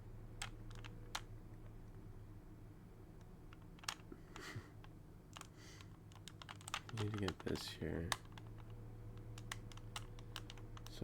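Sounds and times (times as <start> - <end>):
faint low steady hum: 0.0 - 11.0
puzzle cube plastic clicks: 0.4 - 1.3, 3.5 - 11.0.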